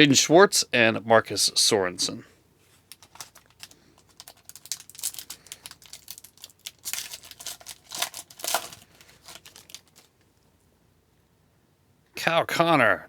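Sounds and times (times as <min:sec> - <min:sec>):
foil pack crinkling and rustling: 0:02.7 - 0:10.3.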